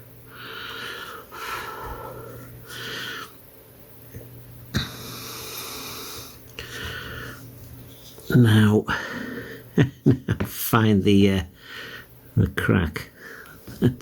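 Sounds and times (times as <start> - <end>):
steady low hum: 0.0 - 14.0
man breathing close: 0.3 - 3.4, 4.8 - 7.5, 8.9 - 9.7, 11.6 - 12.2, 13.1 - 13.7.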